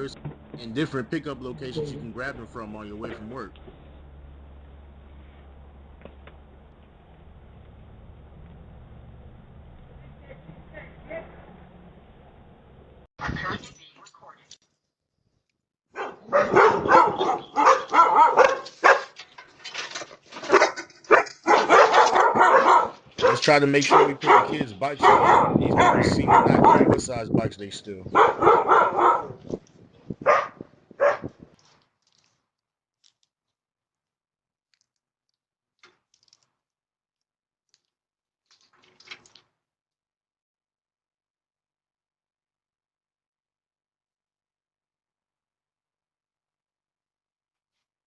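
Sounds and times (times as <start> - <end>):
dog barking: 15.9 - 19.2, 20.4 - 27.0, 28.1 - 29.6, 30.2 - 31.4
rustling and scuffling: 16.3 - 24.5.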